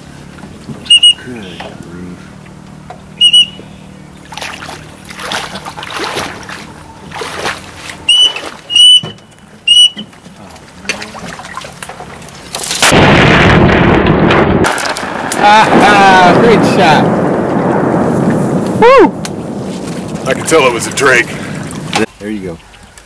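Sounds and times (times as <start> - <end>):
duck whistle call peeps: 0.9 - 1.3, 3.2 - 3.9, 8.0 - 10.1
soft splashing: 4.1 - 8.8, 10.6 - 12.8
rustling: 19.4 - 21.0.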